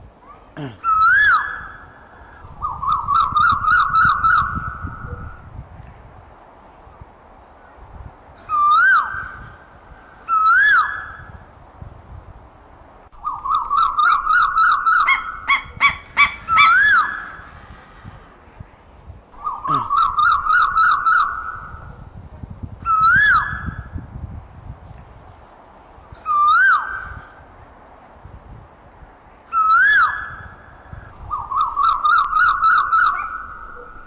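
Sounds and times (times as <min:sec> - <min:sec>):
koel calling: 0:13.2 - 0:17.5, 0:19.4 - 0:21.8
chattering bird notes: 0:19.4 - 0:22.0.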